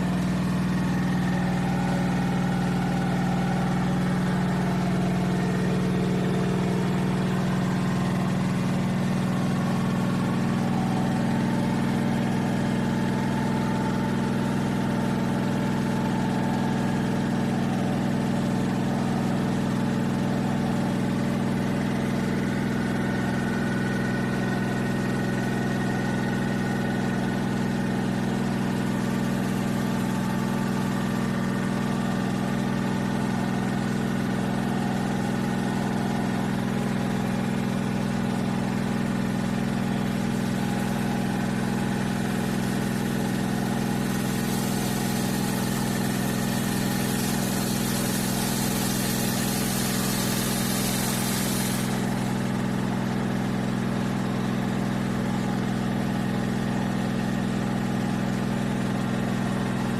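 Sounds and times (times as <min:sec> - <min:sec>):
washing machine humming: 0:00.0 - 0:59.9
hiss: 0:42.6 - 0:52.4.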